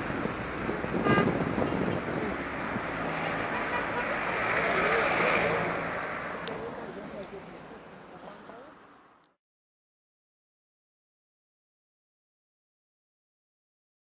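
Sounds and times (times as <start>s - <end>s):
rushing river water: 0.0s - 9.2s
vehicle passing: 0.0s - 9.3s
traffic noise: 0.0s - 9.4s.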